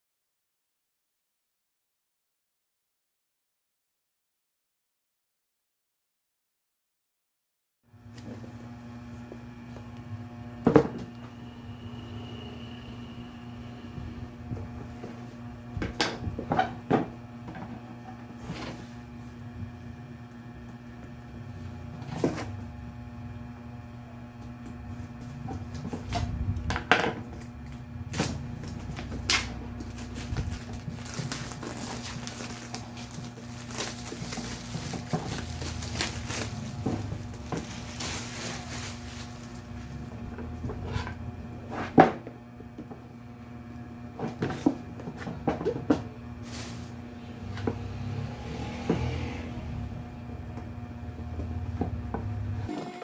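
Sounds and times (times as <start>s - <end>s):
packaging rustling: 28.2s - 40.0s.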